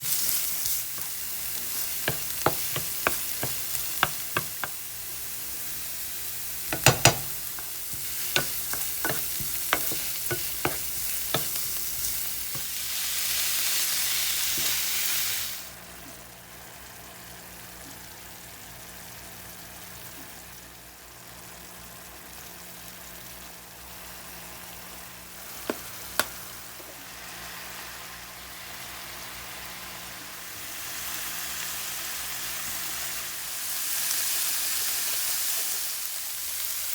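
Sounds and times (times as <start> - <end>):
food sizzling in a frying pan: 0.0 - 36.9
utensil tapping against pan: 2.0 - 4.8, 6.7 - 12.7.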